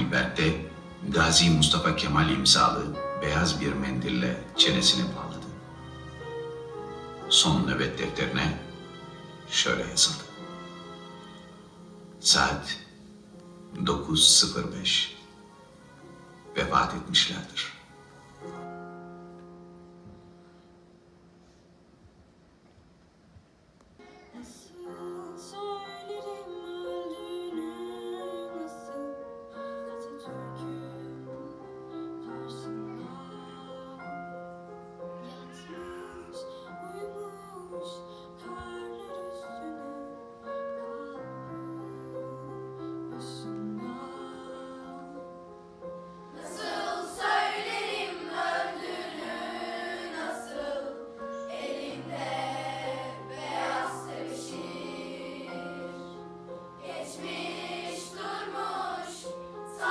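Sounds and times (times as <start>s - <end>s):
piano: 0.0s - 59.9s
mixed choir singing: 46.3s - 59.9s.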